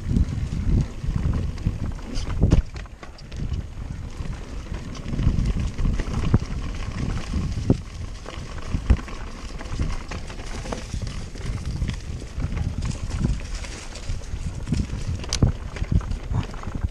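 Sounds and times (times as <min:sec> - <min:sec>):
bike rumbling over trail: 0:00.0 - 0:16.9.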